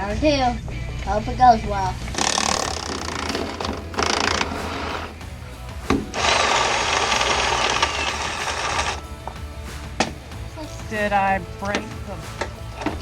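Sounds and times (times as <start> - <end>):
power tool running: 2.1 - 5.2, 5.8 - 9.3.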